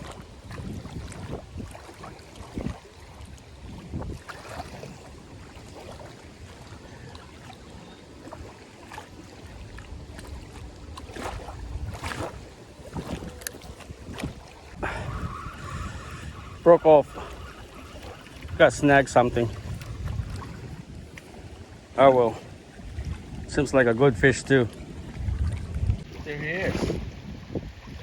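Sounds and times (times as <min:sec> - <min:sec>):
running water: 0:00.0 - 0:28.0
wind on microphone: 0:00.0 - 0:28.0.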